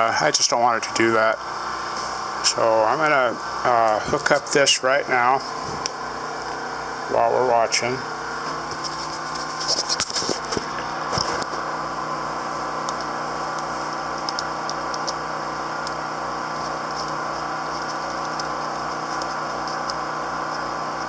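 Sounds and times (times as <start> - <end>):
generator engine humming: 0.0 - 21.0.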